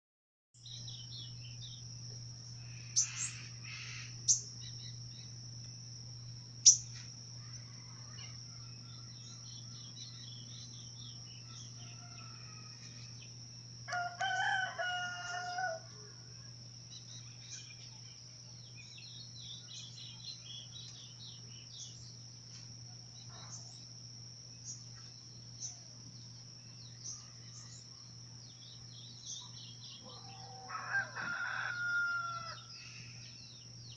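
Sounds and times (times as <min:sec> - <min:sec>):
small birds chirping: 0:00.6 - 0:15.5, 0:16.9 - 0:30.7
high-pitched insect drone: 0:00.6 - 0:33.9
rooster crowing: 0:07.4 - 0:09.3, 0:11.3 - 0:13.2, 0:13.9 - 0:16.2, 0:30.0 - 0:32.8.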